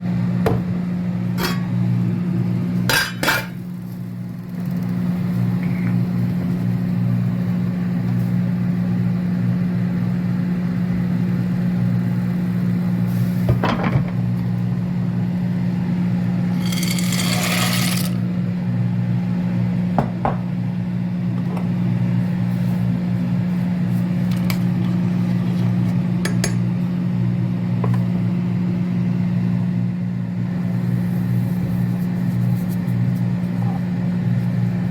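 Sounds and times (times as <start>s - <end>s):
dishes and utensils clinking: 2.9s - 3.6s.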